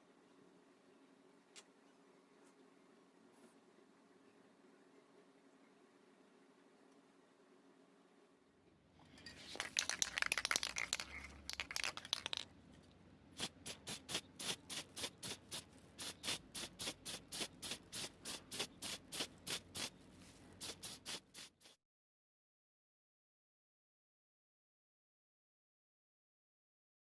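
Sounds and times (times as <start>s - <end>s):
scratching on small part: 9.2s - 12.4s.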